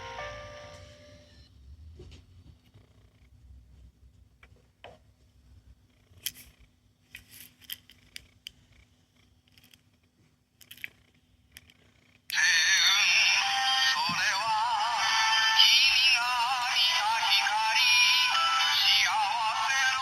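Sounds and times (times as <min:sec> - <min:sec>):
synthesized singing voice song: 0:12.3 - 0:20.0.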